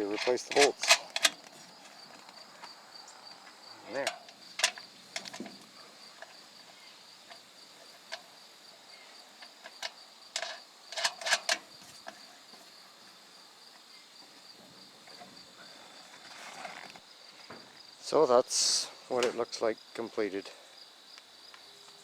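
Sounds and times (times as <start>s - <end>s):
insect chorus: 0.0s - 22.0s.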